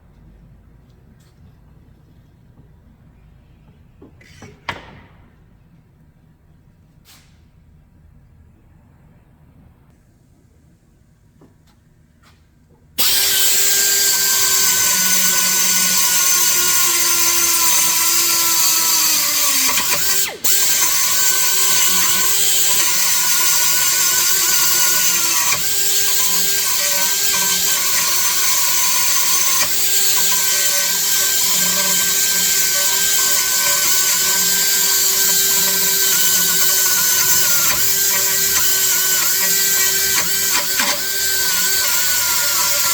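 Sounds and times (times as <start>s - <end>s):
die grinder whining: 13.0s - 42.9s.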